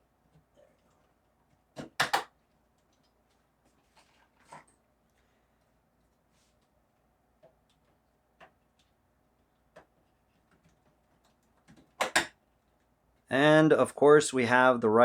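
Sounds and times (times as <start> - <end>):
clicks and taps of computer parts: 1.8 - 2.4, 10.5 - 12.4.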